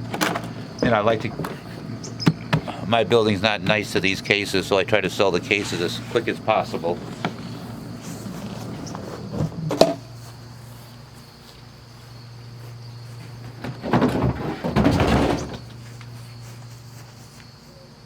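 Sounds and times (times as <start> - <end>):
scraping and rustling: 5.4 - 11.6.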